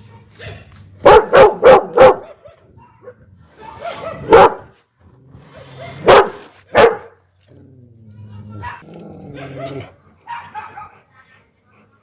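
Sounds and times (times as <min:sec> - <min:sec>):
dog barking: 0:00.4 - 0:04.7, 0:05.8 - 0:07.2, 0:09.4 - 0:11.0.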